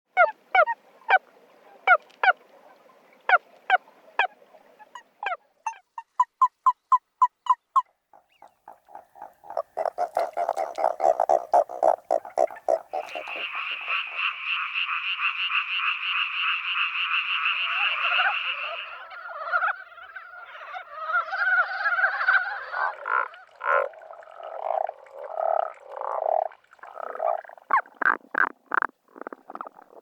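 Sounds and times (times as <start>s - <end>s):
pulsing toad chorus: 6.7s - 30.0s
toads croaking: 7.2s - 30.0s
rapid trilling frog chorus: 8.2s - 30.0s.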